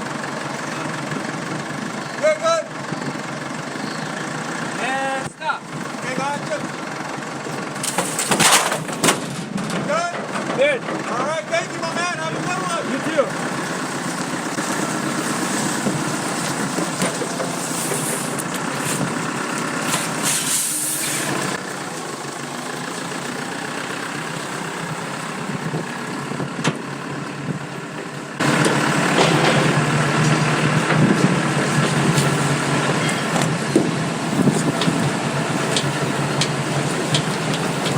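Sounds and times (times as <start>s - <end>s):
vehicle engine running: 0.0s - 37.9s
short hiss: 19.9s - 21.4s.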